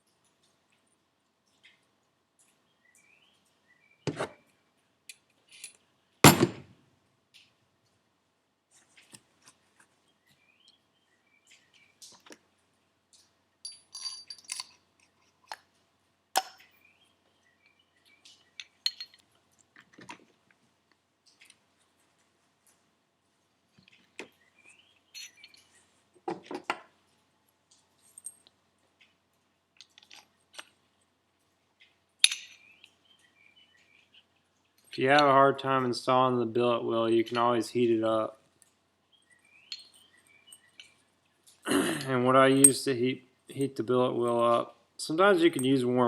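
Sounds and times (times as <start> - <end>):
metal parts and tools clinking: 5.1 - 6.7, 13.6 - 15.6, 18.6 - 20.2, 25.1 - 26.7, 28.0 - 28.5, 32.2 - 32.9, 39.6 - 42.9.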